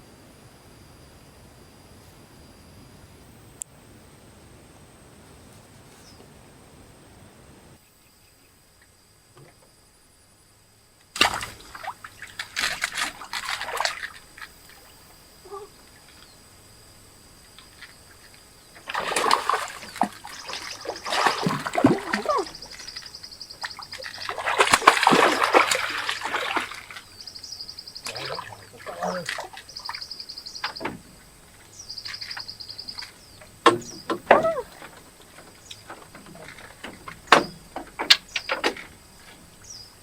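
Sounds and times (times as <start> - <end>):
water splashing and sloshing: 11.2 - 16.3, 17.5 - 40.0.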